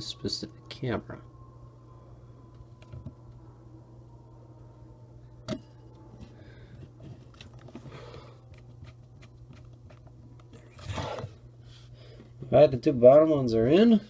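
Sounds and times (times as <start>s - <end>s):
faint low hum: 0.0s - 14.0s.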